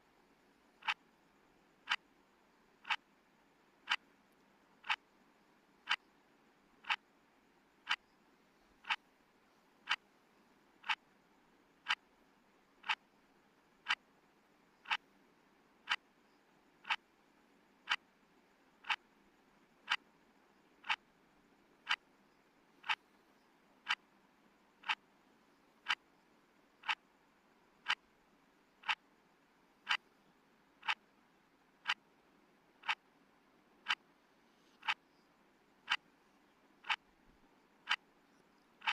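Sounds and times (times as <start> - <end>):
faint hiss: 0.0 - 38.9
clock ticking: 2.8 - 3.0, 4.8 - 5.1, 11.8 - 12.0, 12.8 - 13.0, 14.8 - 15.0, 28.8 - 29.0, 29.8 - 30.0, 30.8 - 31.0.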